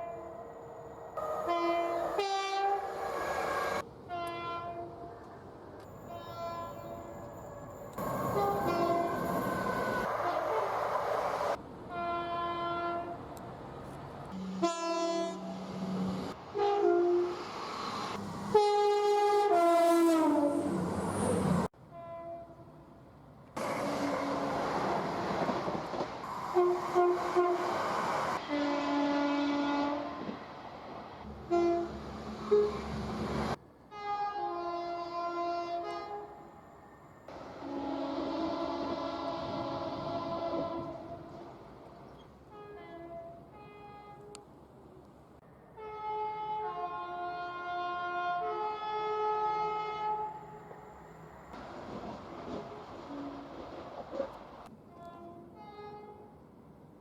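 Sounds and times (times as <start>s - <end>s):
passing train rumble and hiss: 0.0s - 57.0s
train two-tone horns: 1.2s - 5.2s, 6.0s - 11.1s, 11.9s - 13.2s, 14.3s - 17.6s, 18.5s - 22.8s, 26.4s - 30.4s, 31.4s - 33.2s, 33.9s - 41.6s, 42.5s - 44.5s, 45.7s - 51.3s, 52.5s - 54.2s, 54.8s - 56.4s.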